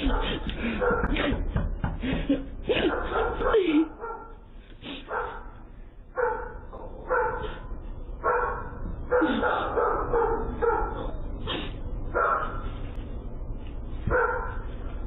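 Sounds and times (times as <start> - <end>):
dog barking: 0.0 - 1.4, 2.7 - 11.3, 12.1 - 12.7, 14.1 - 14.8
steady low hum: 0.0 - 15.0.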